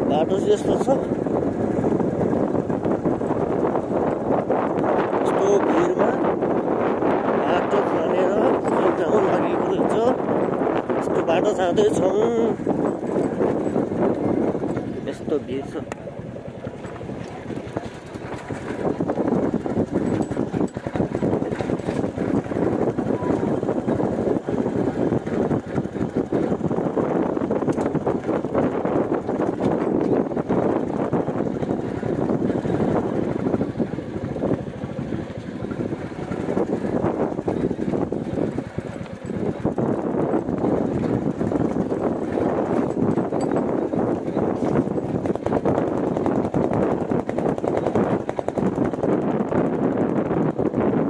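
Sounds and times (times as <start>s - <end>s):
motorcycle engine running: 0.0s - 51.0s
wind on microphone: 0.0s - 51.0s
rattles: 16.7s - 24.2s.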